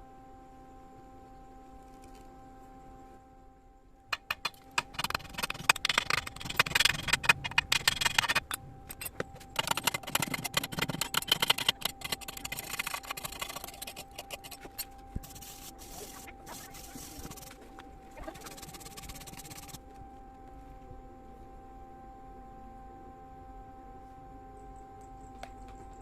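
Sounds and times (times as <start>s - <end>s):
faint high whine: 0.0s - 26.0s
arc welding crackling: 4.2s - 19.8s.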